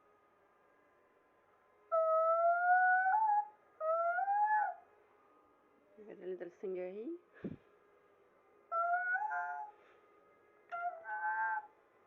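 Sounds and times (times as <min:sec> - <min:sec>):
cat yowling: 0:01.9 - 0:04.8, 0:08.7 - 0:09.8, 0:10.7 - 0:11.8.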